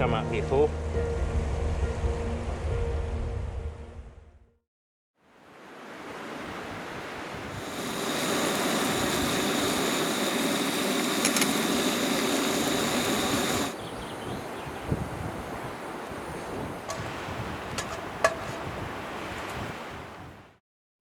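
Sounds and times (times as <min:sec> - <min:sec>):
rushing river water: 0:07.6 - 0:13.8.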